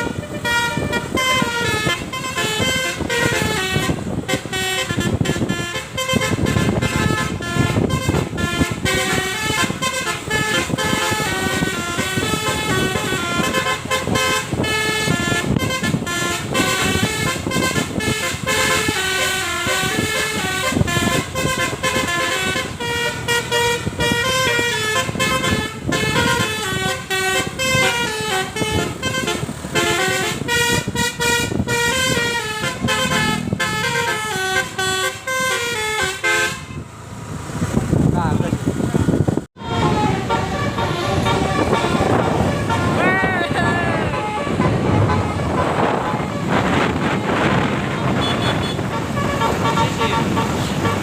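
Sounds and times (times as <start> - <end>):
musical air horns playing a tune: 0.0 - 36.8, 39.6 - 51.0.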